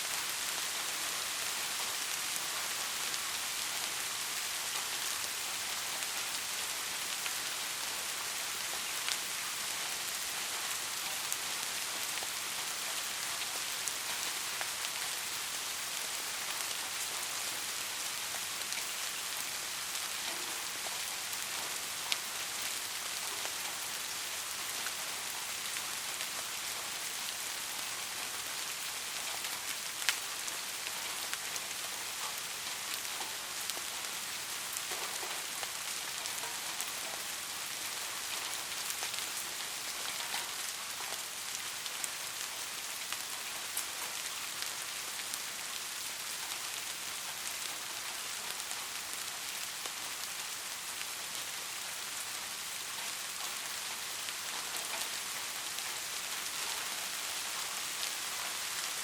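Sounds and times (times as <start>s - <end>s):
steady rain hiss: 0.0s - 59.0s
raindrop ticks: 38.2s - 41.3s.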